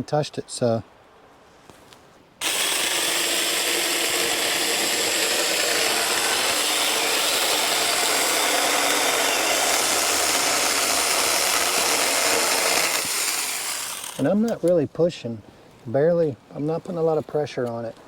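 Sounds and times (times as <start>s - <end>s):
chainsaw cutting through wood: 2.4s - 14.4s.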